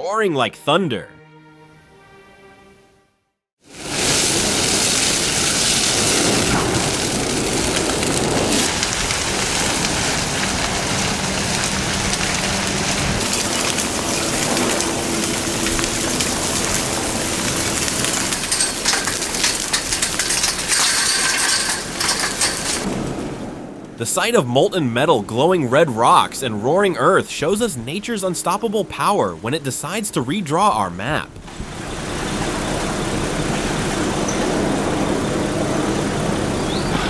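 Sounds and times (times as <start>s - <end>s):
roar of lava jets: 3.7s - 23.8s
sharp cracks and pops: 4.0s - 23.0s.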